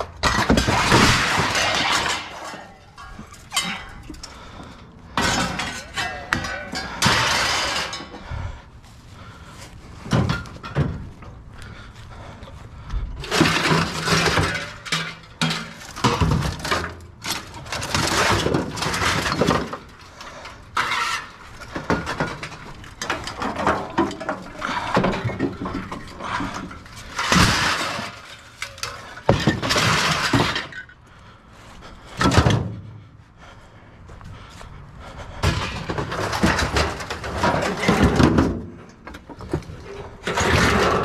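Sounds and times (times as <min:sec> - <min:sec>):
scrap metal clattering onto pile: 0:00.0 - 0:04.4, 0:05.1 - 0:08.2, 0:13.2 - 0:30.9, 0:35.4 - 0:41.0.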